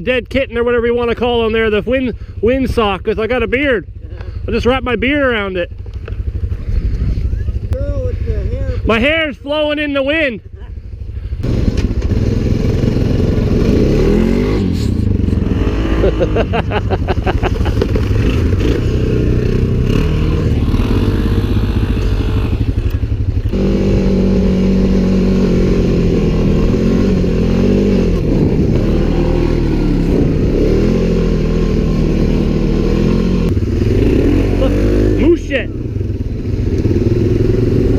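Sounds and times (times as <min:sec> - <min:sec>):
off-road vehicle engine: 0:00.0 - 0:37.9
wind rumble on microphone: 0:06.0 - 0:07.8, 0:23.8 - 0:32.0.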